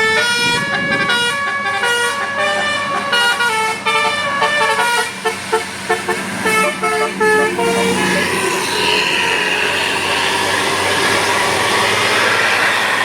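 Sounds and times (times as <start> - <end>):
musical air horn playing a tune: 0.0 - 10.0.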